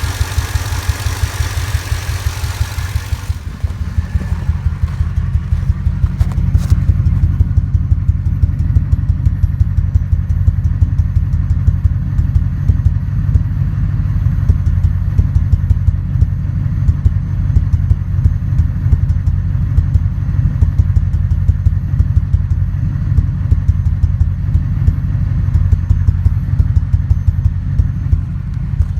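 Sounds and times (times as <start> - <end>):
light engine ticks: 0.0 - 12.9, 20.6 - 28.9
engine idling roughly: 0.0 - 28.9.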